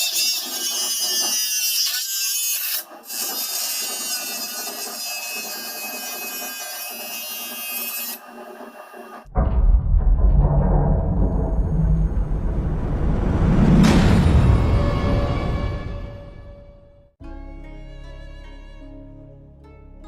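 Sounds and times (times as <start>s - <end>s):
deep booming music hit: 9.3s - 17.1s.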